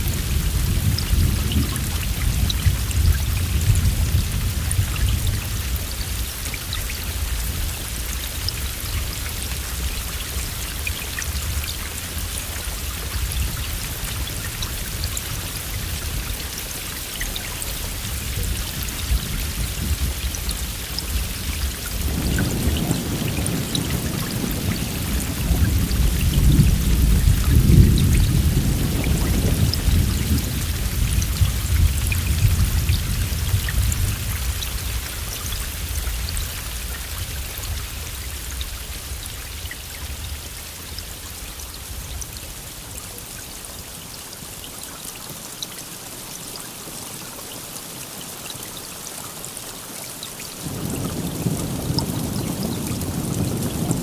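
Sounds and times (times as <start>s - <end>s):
low roll of thunder: 0.0s - 6.4s, 17.8s - 39.2s, 50.6s - 54.0s
heavy rain pattering: 0.0s - 54.0s.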